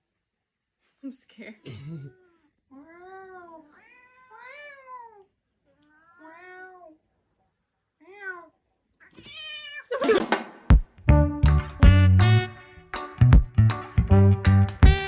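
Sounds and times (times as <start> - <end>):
cat meowing: 2.8 - 5.2, 5.8 - 7.0, 8.0 - 9.9.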